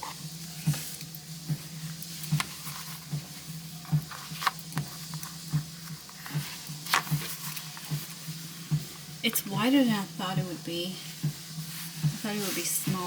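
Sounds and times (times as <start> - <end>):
steady low hum: 0.0 - 13.0
soft rubbing: 11.0 - 13.0.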